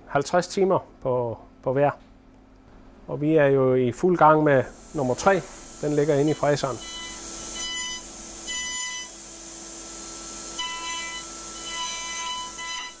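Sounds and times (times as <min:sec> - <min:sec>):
milling machine hissing and whining: 0:04.3 - 0:13.0.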